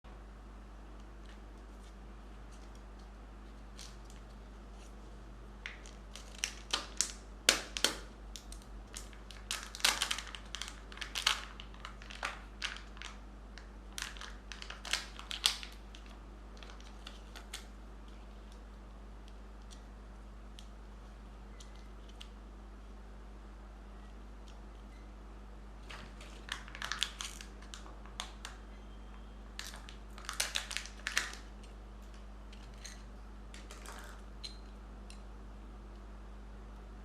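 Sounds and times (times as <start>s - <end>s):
candy wrapper crinkling and tearing: 5.6s - 17.7s, 25.8s - 28.6s, 29.6s - 34.2s.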